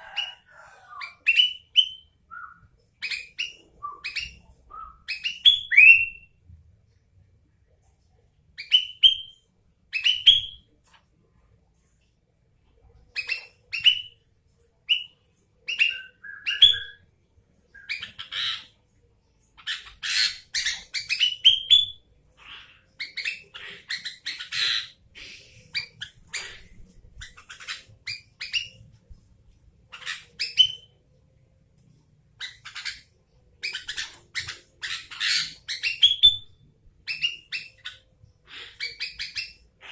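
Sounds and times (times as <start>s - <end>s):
bulbul whistled song: 1.0s - 6.3s, 15.7s - 17.0s, 35.6s - 38.0s.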